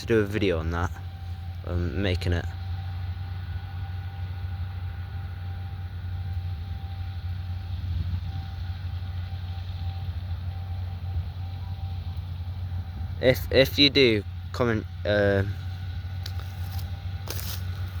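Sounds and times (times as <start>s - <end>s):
faint steady whine: 0.0s - 18.0s
low engine hum: 0.0s - 18.0s.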